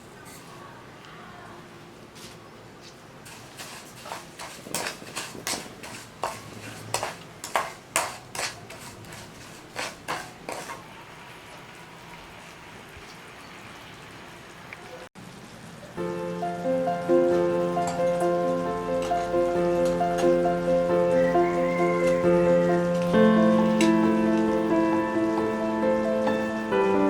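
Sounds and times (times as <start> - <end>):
utensil scraping cookware: 3.2 - 10.9
faint steady hiss: 10.8 - 27.0.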